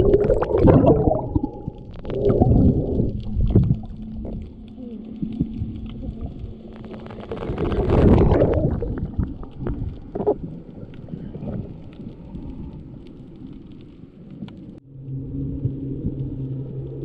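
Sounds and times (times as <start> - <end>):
rush of water: 0.0 - 4.7, 5.3 - 13.8
water sloshing and gurgling: 0.0 - 16.6
low motor hum: 0.0 - 17.0.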